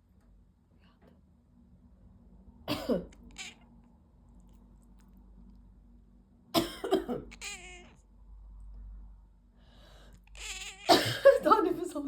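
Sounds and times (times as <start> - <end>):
person coughing: 2.7 - 3.1, 6.6 - 7.3, 10.8 - 11.5
cat meowing: 3.1 - 3.7, 7.2 - 8.0, 10.3 - 11.1.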